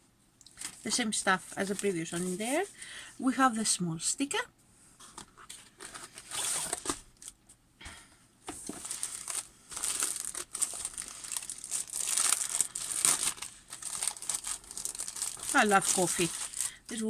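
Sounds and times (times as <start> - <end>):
plastic packaging crinkling: 8.6 - 17.0.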